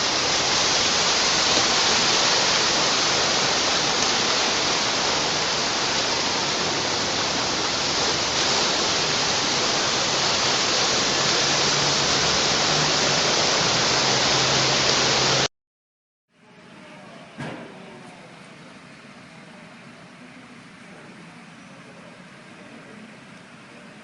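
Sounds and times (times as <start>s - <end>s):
rushing flood water: 0.0s - 15.5s.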